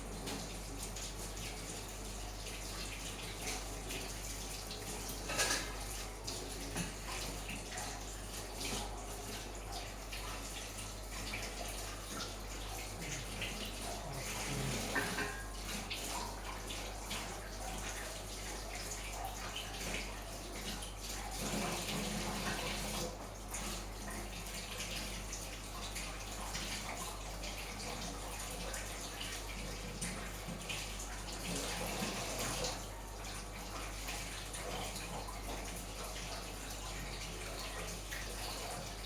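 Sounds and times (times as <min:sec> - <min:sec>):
food deep-frying in hot oil: 0:00.0 - 0:24.6.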